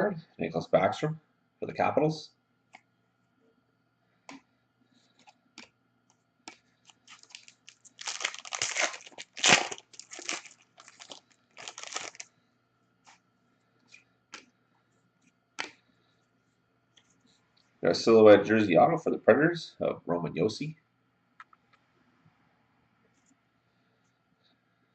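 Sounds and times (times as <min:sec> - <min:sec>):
card pack wrapper crinkling and tearing: 0:06.9 - 0:12.3.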